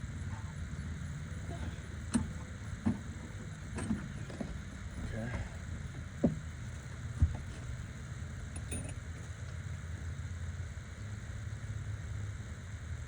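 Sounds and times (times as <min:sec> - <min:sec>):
steady low hum: 0:00.0 - 0:13.0
metal tools knocking on engine parts: 0:02.0 - 0:05.1, 0:08.5 - 0:09.2.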